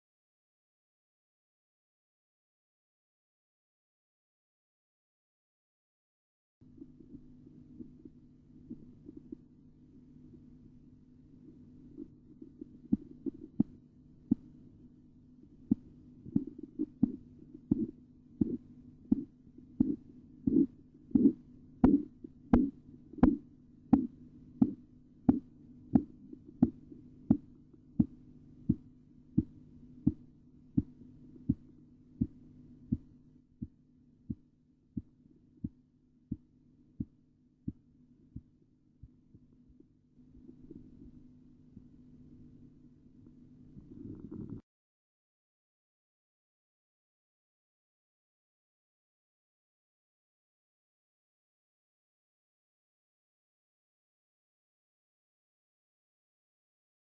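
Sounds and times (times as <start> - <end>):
steady low hum: 6.6 - 44.6
heartbeat taps through stethoscope: 12.0 - 14.5, 15.7 - 41.1.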